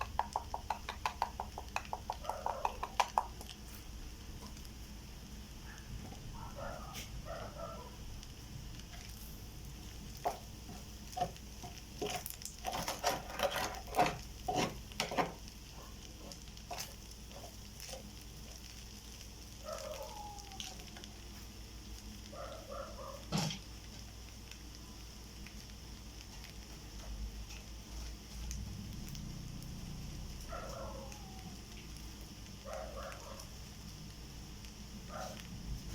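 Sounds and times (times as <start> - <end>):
rice frying in a pan: 0.0 - 35.9
spatula scraping a pan: 10.2 - 15.3.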